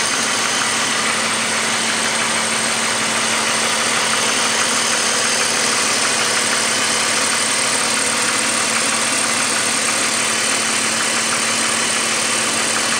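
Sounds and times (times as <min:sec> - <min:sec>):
car engine idling: 0:00.0 - 0:12.9
fast engine knocking: 0:00.0 - 0:12.9.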